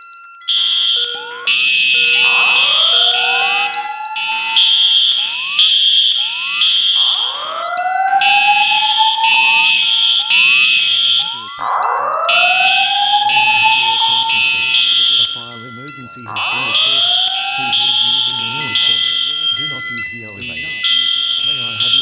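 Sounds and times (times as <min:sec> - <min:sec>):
pulsing fire alarm horn tones: 0:00.0 - 0:22.0
rising alarm whoop: 0:00.0 - 0:22.0
upward alarm chirps: 0:00.0 - 0:22.0.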